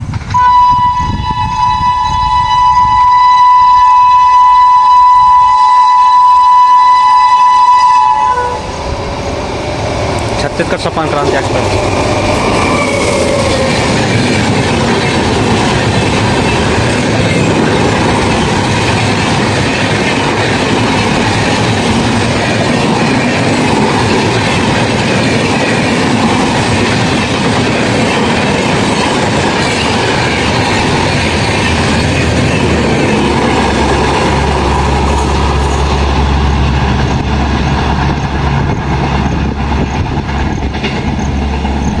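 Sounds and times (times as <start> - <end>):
train wheels rushing on rails: 0.0 - 42.0
wheel squeal: 11.9 - 15.1.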